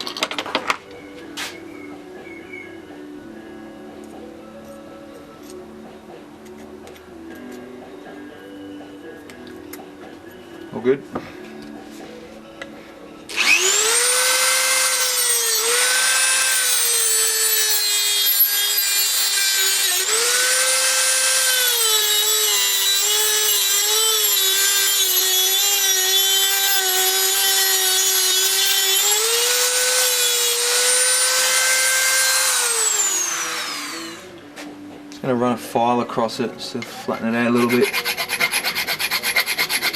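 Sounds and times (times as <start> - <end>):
rotary tool cutting metal: 13.3 - 34.3, 37.5 - 39.9.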